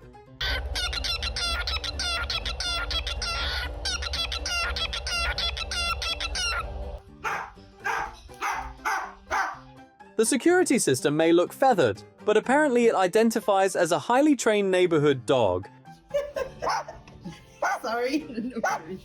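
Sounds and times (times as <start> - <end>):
bird clucking calls: 7.3 - 9.6.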